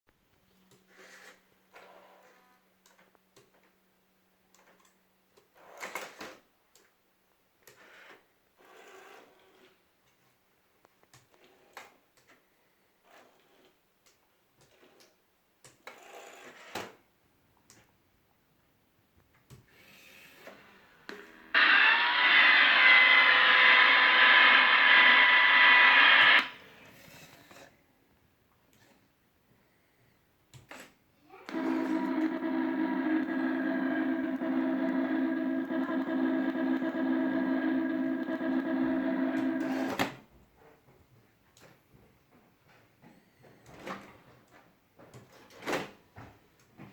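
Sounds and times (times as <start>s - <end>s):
electronic chirps and warbling beep: 31.5s - 40.0s
faint steady hum: 31.5s - 40.0s.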